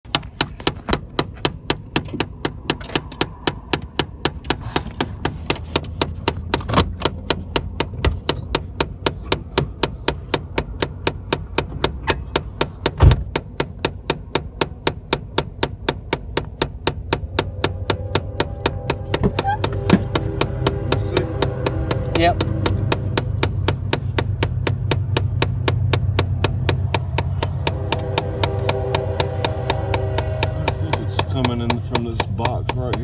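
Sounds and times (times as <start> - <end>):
rapid even clicking in car: 0.0 - 33.0
low hum: 17.1 - 25.1, 25.8 - 32.1.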